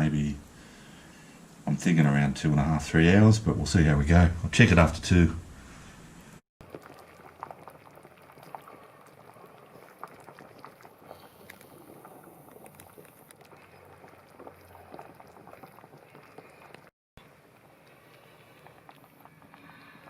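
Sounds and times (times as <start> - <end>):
stock bubbling in a pot: 6.6 - 20.0.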